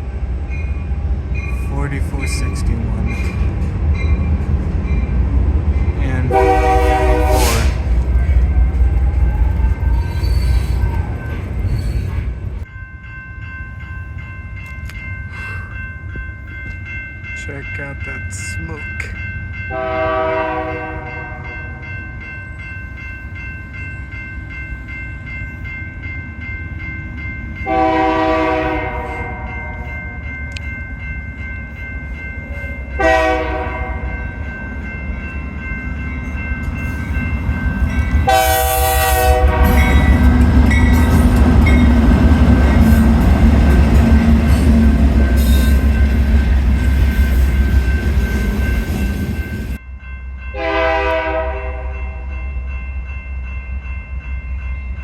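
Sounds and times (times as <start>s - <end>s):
locomotive engine and wheels rumbling: 0.0s - 50.7s
locomotive air horn: 6.3s - 7.9s, 19.7s - 21.4s, 27.7s - 29.8s, 33.0s - 34.1s, 38.2s - 40.2s, 50.6s - 52.0s.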